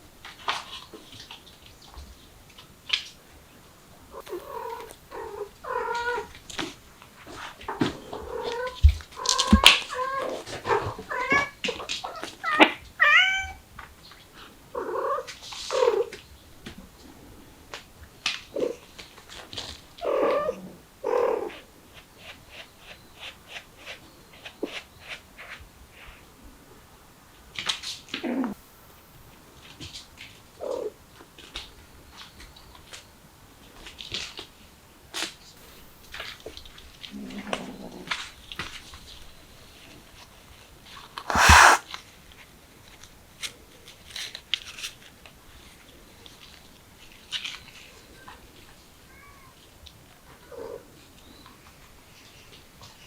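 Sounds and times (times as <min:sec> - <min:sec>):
cat and kittens meowing: 0:41.3 - 0:41.8, 0:49.1 - 0:49.6.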